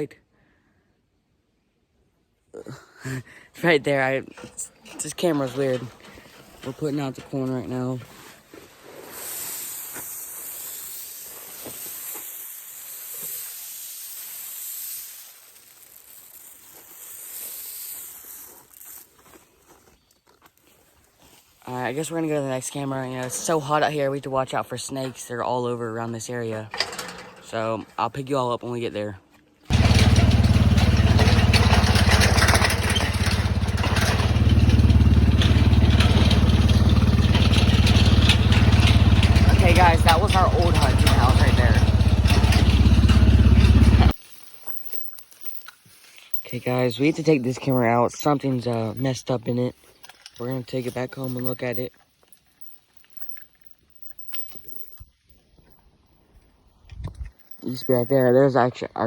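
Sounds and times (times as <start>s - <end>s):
cicadas droning: 9.4s - 19.1s
atv engine chugging: 29.7s - 44.2s.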